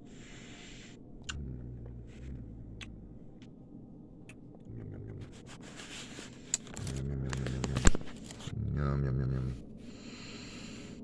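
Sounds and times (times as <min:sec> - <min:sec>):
man humming with closed mouth: 0:01.2 - 0:03.2, 0:04.6 - 0:05.6.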